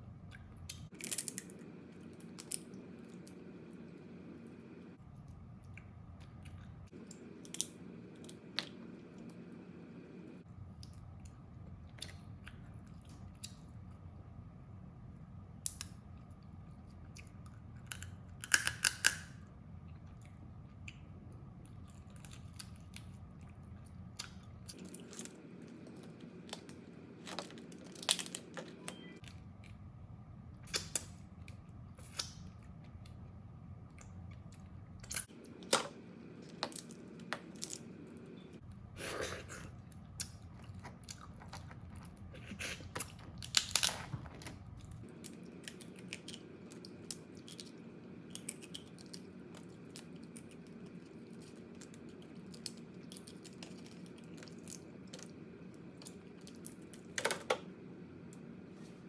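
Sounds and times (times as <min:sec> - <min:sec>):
low steady hum: 0:00.0 - 0:59.0
crab shells cracking and crunching: 0:00.7 - 0:02.7, 0:17.8 - 0:19.4, 0:40.0 - 0:44.5.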